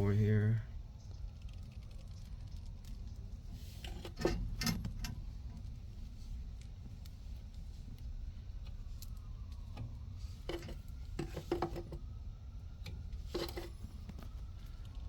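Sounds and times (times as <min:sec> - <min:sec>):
steady low hum: 0:00.0 - 0:01.4.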